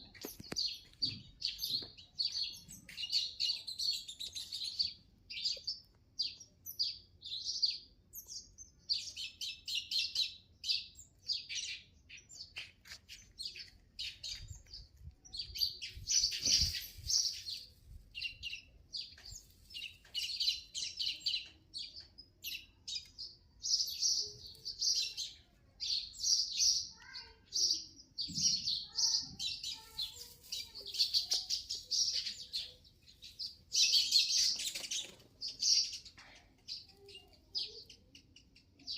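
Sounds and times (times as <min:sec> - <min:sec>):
small birds chirping: 0:00.0 - 0:38.9.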